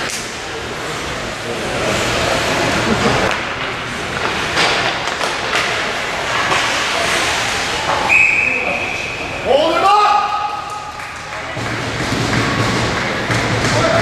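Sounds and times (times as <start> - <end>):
skates rushing and scraping on ice: 0.0 - 8.1, 10.4 - 14.0
hockey sticks knocking puck: 3.1 - 8.1, 10.3 - 14.0.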